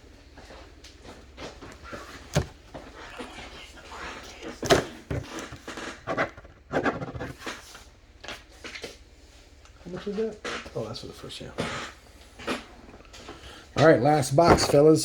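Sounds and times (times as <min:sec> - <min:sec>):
sharp knocks on a table: 0:02.3 - 0:02.6.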